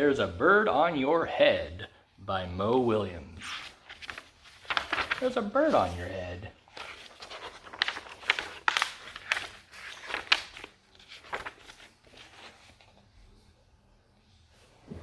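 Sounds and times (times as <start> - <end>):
paper pages rustling: 3.4 - 13.1.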